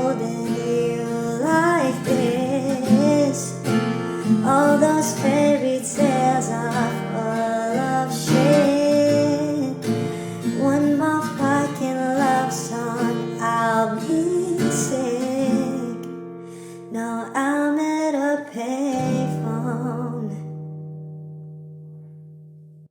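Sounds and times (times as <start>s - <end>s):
high vocal line: 0.0s - 16.0s
acoustic guitar: 0.0s - 22.9s.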